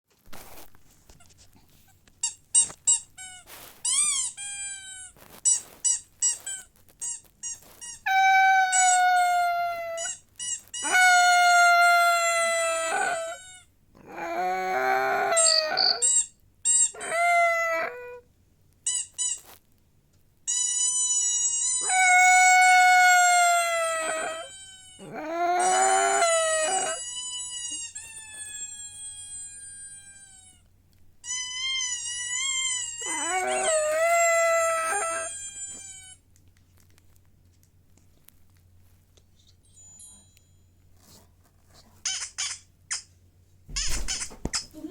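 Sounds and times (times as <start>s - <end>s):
dog howling: 8.1s - 10.2s, 10.8s - 16.2s, 16.9s - 18.2s, 21.8s - 27.1s, 32.3s - 36.1s
short high squeaks: 15.4s - 16.9s, 20.5s - 22.0s, 31.2s - 34.0s, 42.0s - 43.1s, 43.7s - 44.9s.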